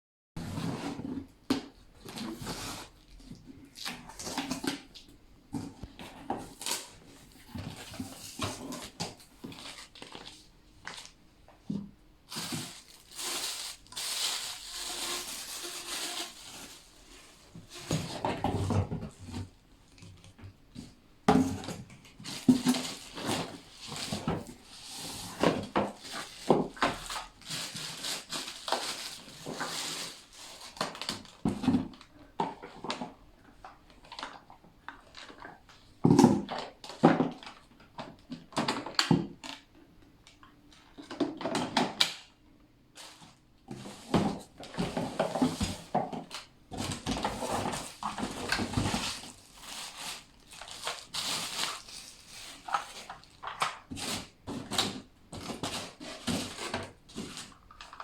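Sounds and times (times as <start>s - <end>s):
packaging rustling: 12.3s - 18.1s, 44.9s - 58.0s.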